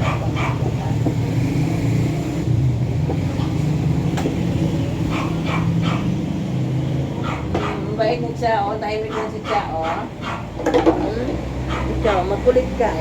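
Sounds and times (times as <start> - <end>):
puppy whimpering: 5.1 - 6.1.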